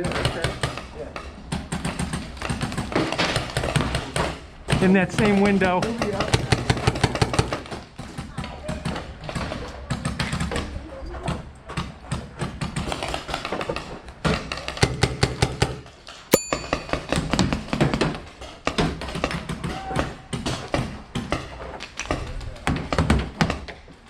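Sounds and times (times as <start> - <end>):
sharp click with ringing tone: 16.3 - 17.5.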